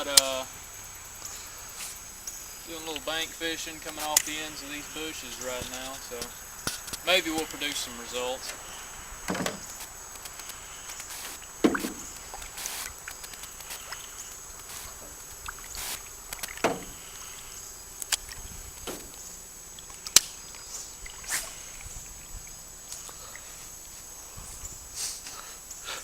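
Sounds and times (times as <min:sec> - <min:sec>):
fishing gear knocks and clicks: 0:09.3 - 0:12.5.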